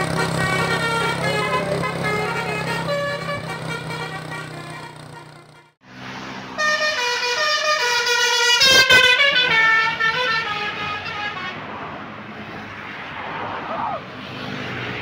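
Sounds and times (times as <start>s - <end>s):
multi-tone air horn melody: 0.0s - 5.8s, 6.5s - 11.6s
bus engine hum: 0.0s - 15.0s.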